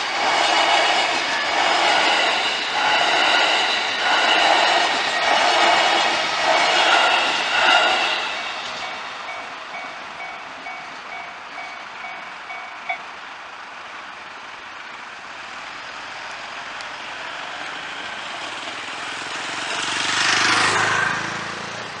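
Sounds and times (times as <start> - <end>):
level crossing warning bell: 8.4 - 13.1
road vehicle passing: 15.9 - 22.0.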